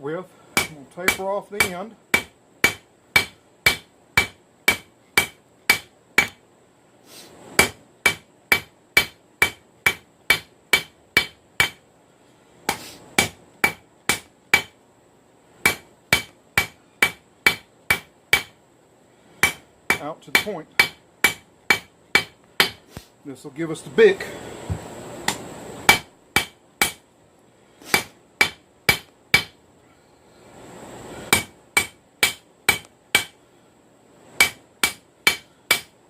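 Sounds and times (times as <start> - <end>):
hammer striking metal on anvil: 0.6 - 6.4, 7.6 - 11.8, 12.7 - 14.7, 15.6 - 18.6, 19.4 - 22.8, 25.9 - 27.0, 27.9 - 29.6, 31.3 - 33.4, 34.4 - 35.9.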